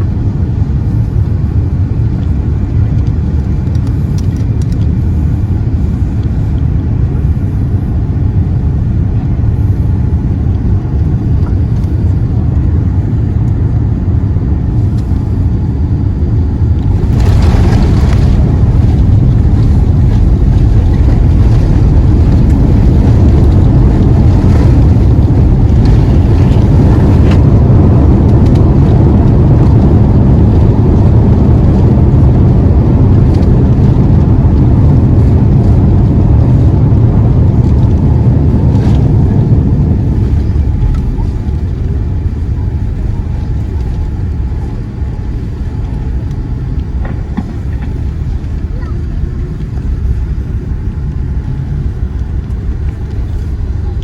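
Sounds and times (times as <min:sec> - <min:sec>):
airliner touching down: 0:00.0 - 0:54.0
airplane cabin rumble: 0:00.0 - 0:54.0.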